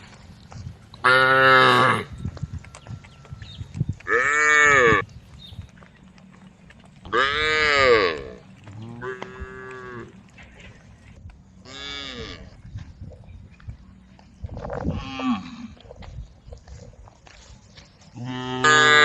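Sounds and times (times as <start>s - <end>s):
cows mooing: 1.0s - 2.2s, 4.0s - 5.1s, 7.0s - 10.8s, 11.6s - 12.6s, 18.2s - 19.0s.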